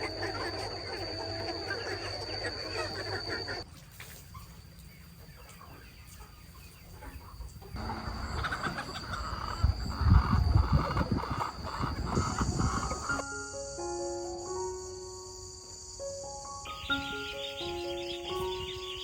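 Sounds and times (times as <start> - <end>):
chickens clucking: 0.0 - 13.2.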